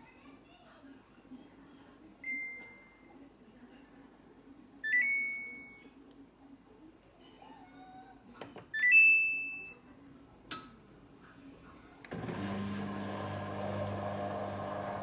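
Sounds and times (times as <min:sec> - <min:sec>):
washing machine electronic beeps: 0:02.2 - 0:03.1, 0:04.8 - 0:05.9, 0:08.8 - 0:09.8.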